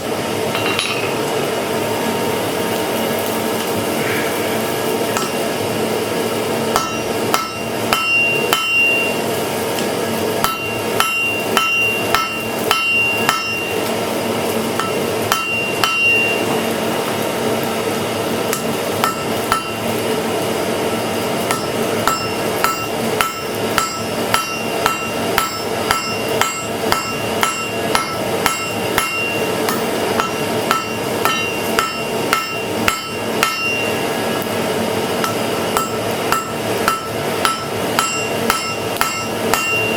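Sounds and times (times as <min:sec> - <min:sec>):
hammer striking iron on anvil: 0:00.5 - 0:01.2, 0:05.1 - 0:05.4, 0:06.7 - 0:09.2, 0:10.4 - 0:13.9, 0:14.8 - 0:16.5, 0:18.5 - 0:19.9, 0:21.5 - 0:34.1, 0:35.2 - 0:39.9.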